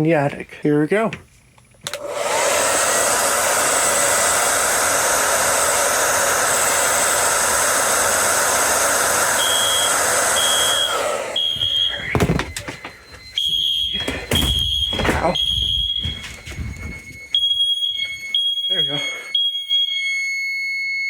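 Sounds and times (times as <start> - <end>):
hot-air blower running: 1.8 - 15.4
short high alarm beeps: 9.4 - 21.0.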